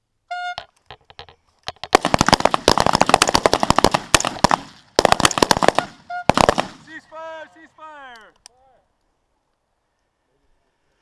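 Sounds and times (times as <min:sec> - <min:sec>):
rifle shots: 0:01.9 - 0:07.0.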